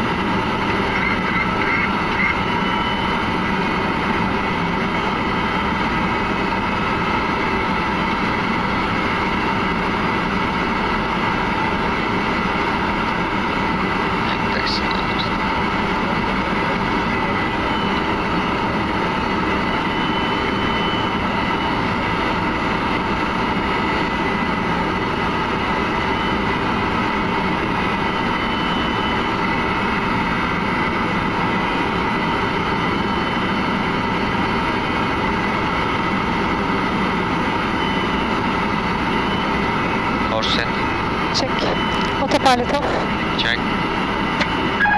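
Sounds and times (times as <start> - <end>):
airflow and engine noise: 0.0 - 44.9
faint steady tones: 32.2 - 44.9.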